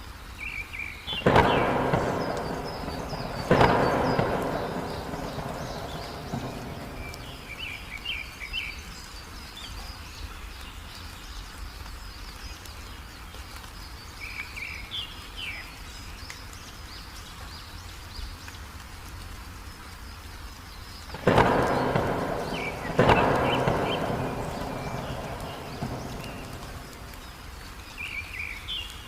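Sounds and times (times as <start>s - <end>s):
small birds chirping: 0.1s - 29.0s
thunder rumble: 1.1s - 8.7s, 21.1s - 28.5s
low storm rumble: 1.1s - 9.0s, 21.0s - 28.7s.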